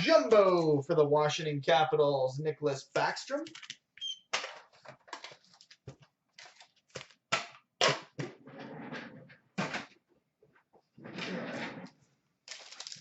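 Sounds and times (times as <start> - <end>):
wrapper crinkling: 5.1 - 5.8, 6.4 - 7.2, 12.4 - 13.0.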